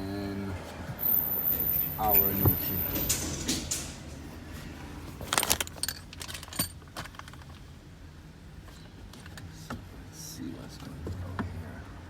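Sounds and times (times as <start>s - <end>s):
car keys jangling: 1.0s - 4.1s.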